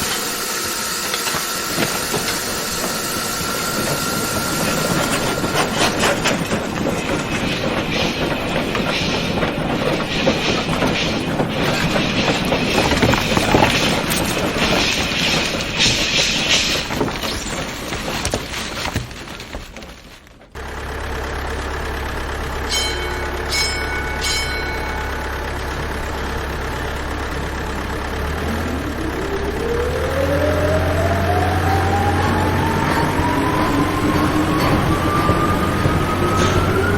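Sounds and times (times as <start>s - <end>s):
machinery clattering and clanking: 0.0s - 36.9s
low machine hum: 20.6s - 36.9s
motor whine rising in pitch: 24.8s - 36.9s.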